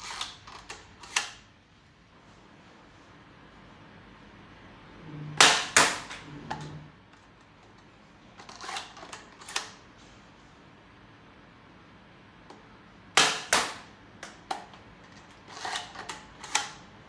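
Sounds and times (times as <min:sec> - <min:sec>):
dart blaster firing cracks: 0:05.4 - 0:06.2, 0:13.2 - 0:13.9.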